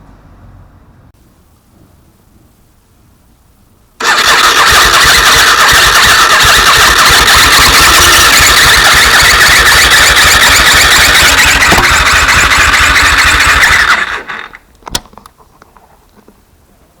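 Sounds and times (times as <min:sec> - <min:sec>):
vehicle engine running harshly: 0:04.0 - 0:14.6.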